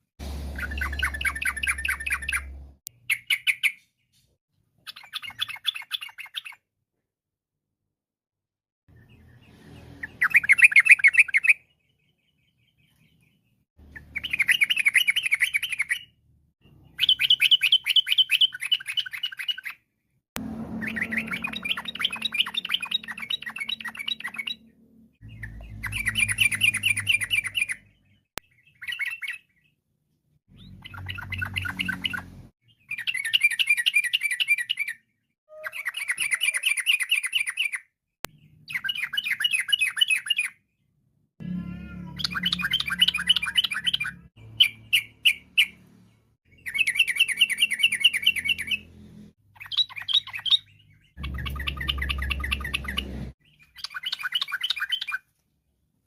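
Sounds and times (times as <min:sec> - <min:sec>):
bird bubbling chattering song: 0:00.6 - 0:03.8, 0:20.8 - 0:27.8, 0:30.6 - 0:34.9, 0:49.6 - 0:55.2.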